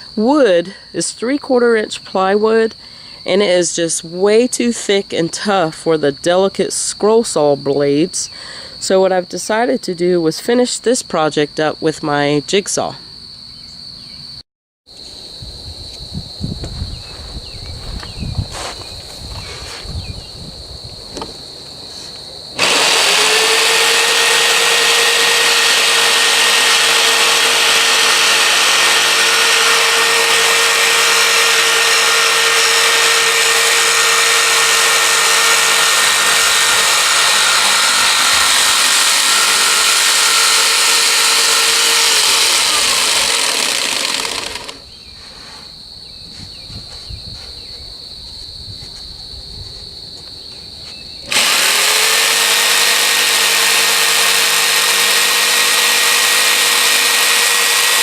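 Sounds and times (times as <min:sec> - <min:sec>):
electric jigsaw cutting plywood: 0:22.6 - 0:44.8, 0:51.3 - 0:58.0.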